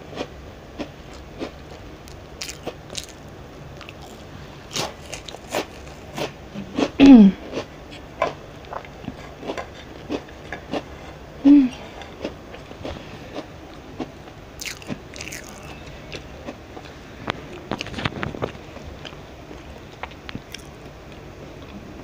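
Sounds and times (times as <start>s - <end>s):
crunching and chewing cookies: 0.0s - 11.2s, 11.8s - 21.8s
person humming mm: 11.4s - 11.9s.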